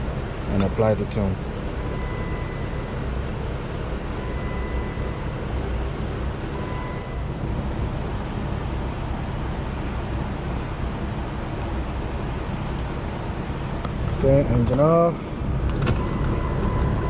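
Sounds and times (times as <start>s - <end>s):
faint thin tone: 6.4s - 7.3s.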